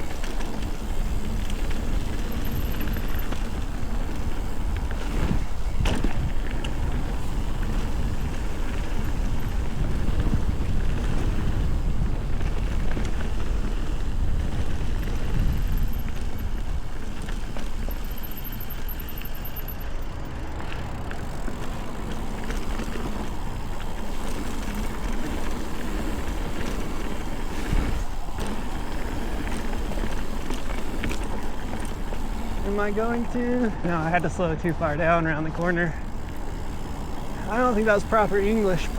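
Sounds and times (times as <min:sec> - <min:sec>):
wind on microphone: 0:00.0 - 0:18.1
bike clicks and rattles: 0:00.0 - 0:38.9
bike tyres rolling over dirt: 0:00.0 - 0:38.9.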